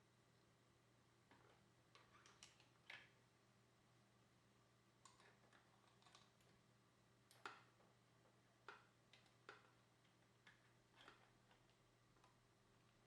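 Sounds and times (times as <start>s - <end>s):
small hard parts clicking and knocking: 1.3s - 3.2s, 5.0s - 6.6s, 7.3s - 13.0s.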